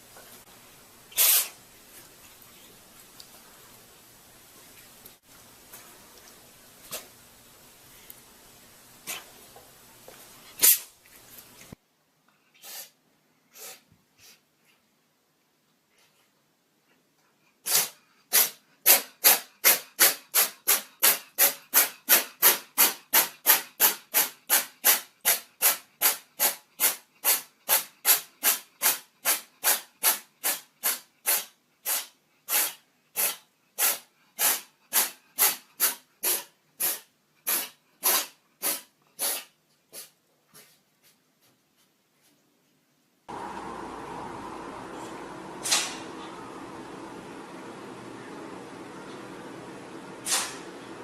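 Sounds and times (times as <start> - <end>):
animal sneezing: 1.1 - 1.6, 10.6 - 10.9, 12.6 - 14.4, 17.6 - 22.9, 23.5 - 40.7, 50.2 - 50.6.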